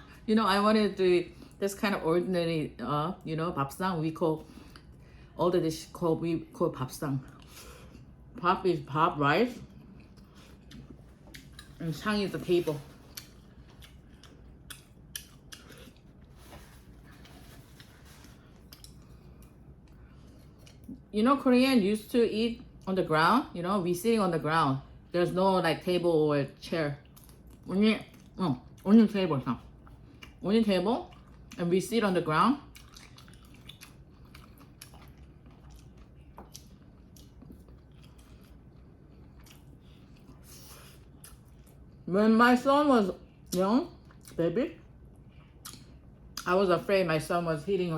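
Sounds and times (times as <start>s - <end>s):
person chewing food: 9.7s - 11.8s, 12.6s - 21.0s, 29.7s - 30.4s, 31.1s - 31.6s, 32.7s - 42.0s, 45.1s - 46.5s.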